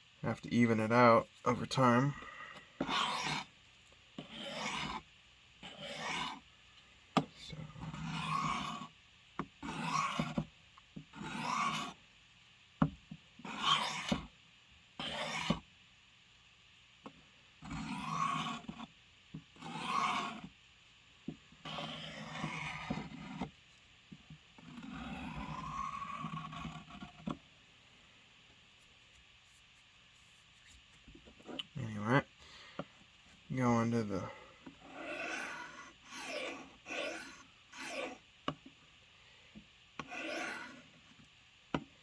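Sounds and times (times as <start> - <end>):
blade scraping on sharpener: 2.8 - 3.5, 4.2 - 5.0, 5.6 - 6.4, 7.9 - 8.9, 9.6 - 10.4, 11.2 - 12.0, 13.4 - 14.2, 15.0 - 15.6, 17.7 - 18.8, 19.6 - 20.5, 21.7 - 23.4, 34.8 - 38.2, 40.0 - 40.9.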